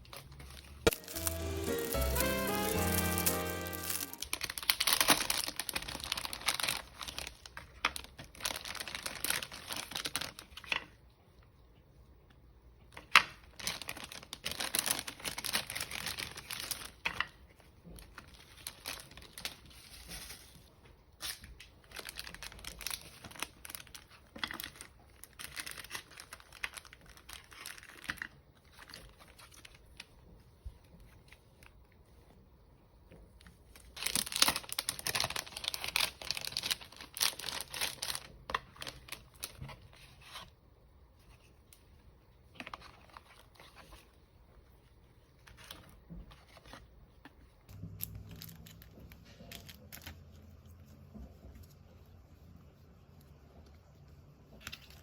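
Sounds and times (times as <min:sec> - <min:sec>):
packaging crinkling and tearing: 0:00.0 - 0:11.0, 0:13.0 - 0:30.1, 0:33.7 - 0:40.5.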